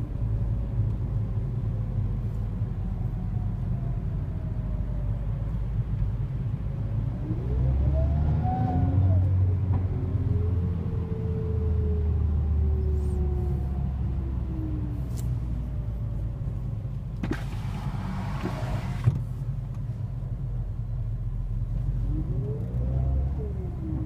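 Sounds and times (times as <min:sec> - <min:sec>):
car engine while driving: 0:00.0 - 0:24.0
road rumble: 0:00.0 - 0:24.0.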